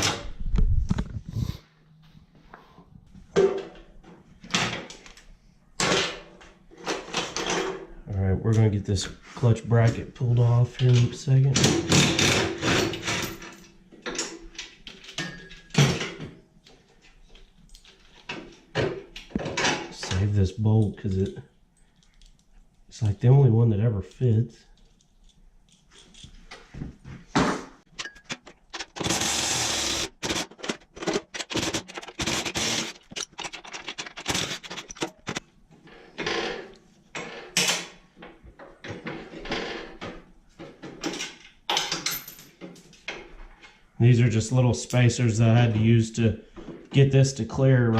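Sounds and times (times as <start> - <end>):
metal tools clicking and clanking: 10.8 - 16.2, 27.9 - 43.2
metal tools clanking: 27.9 - 29.2
rasping bursts: 31.4 - 35.0.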